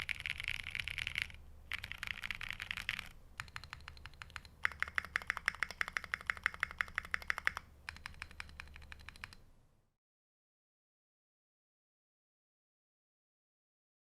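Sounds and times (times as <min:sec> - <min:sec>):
rapid mechanical keyboard typing: 0:00.0 - 0:09.4.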